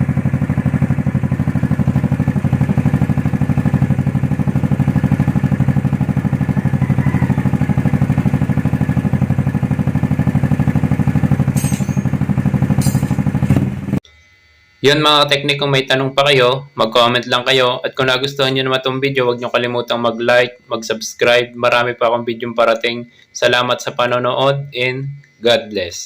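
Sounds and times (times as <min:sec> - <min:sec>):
scooter engine idling: 0:00.0 - 0:14.0.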